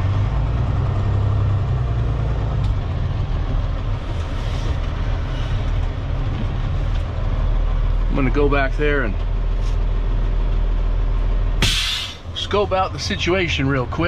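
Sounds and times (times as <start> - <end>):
diesel truck engine droning: 0.0 - 14.0.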